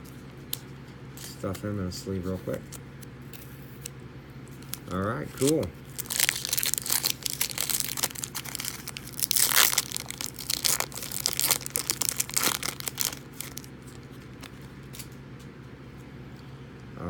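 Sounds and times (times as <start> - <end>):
foil wrapper tearing and crinkling: 4.6 - 15.1.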